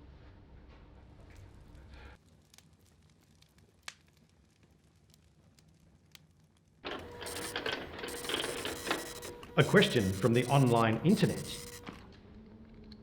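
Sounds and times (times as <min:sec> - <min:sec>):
printer clattering: 0:06.9 - 0:11.8.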